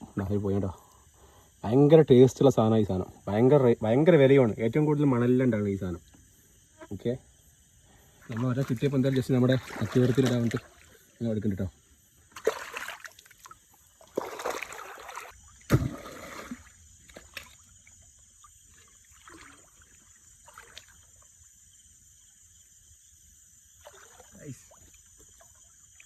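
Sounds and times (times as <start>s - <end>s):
water splashing in a river: 8.2s - 11.1s, 12.3s - 21.3s, 23.8s - 26.0s.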